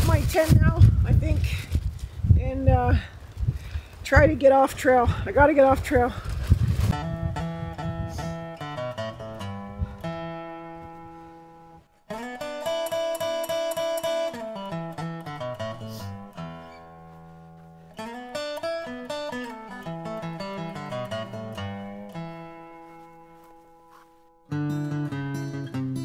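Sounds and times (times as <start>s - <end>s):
acoustic guitar melody: 6.9s - 26.0s.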